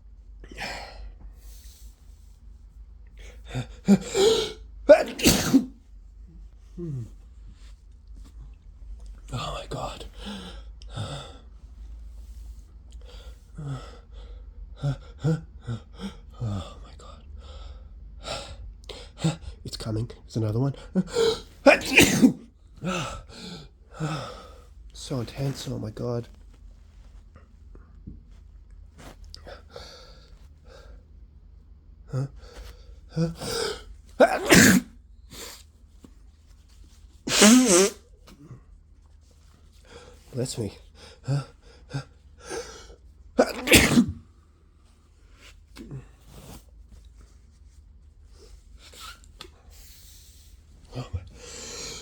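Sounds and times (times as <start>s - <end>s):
man breathing softly: 0.5s - 2.4s, 49.6s - 52.0s
person sneezing: 3.5s - 5.8s, 21.1s - 23.2s, 33.2s - 35.6s, 37.3s - 38.1s, 43.4s - 44.2s.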